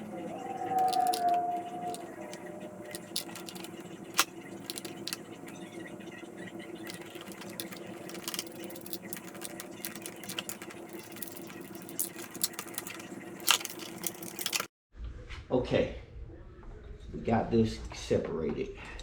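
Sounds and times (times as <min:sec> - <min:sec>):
steady low hum: 0:00.0 - 0:14.7.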